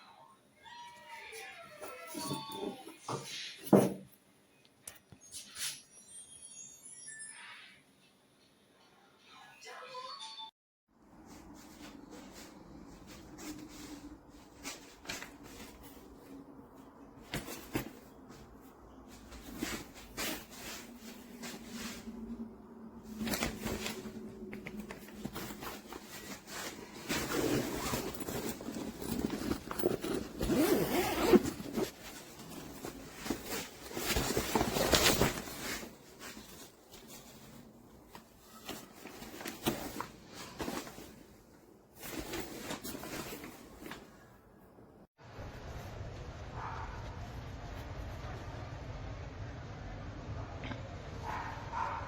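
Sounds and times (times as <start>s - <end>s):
bag rustling and scraping: 11.3s - 44.3s
zipper being pulled: 24.8s - 35.3s.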